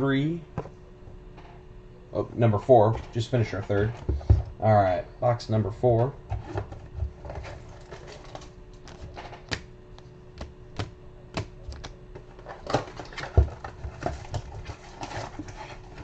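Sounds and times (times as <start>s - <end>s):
cardboard box and card packs handled: 6.3s - 9.4s, 10.4s - 16.0s.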